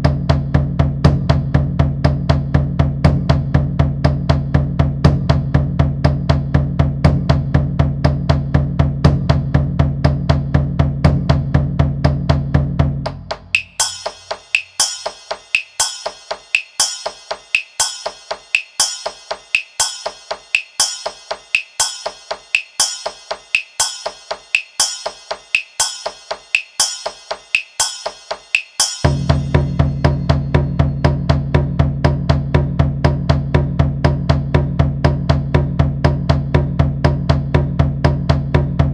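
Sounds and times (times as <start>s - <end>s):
bright ringing strikes: 13.6s - 30.2s
taiko drums booming: 29.0s - 31.3s.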